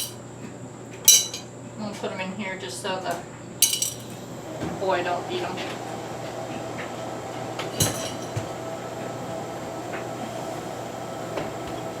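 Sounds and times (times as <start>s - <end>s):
steady background hum: 0.0s - 12.0s
metal screws clinking in container: 3.6s - 4.1s.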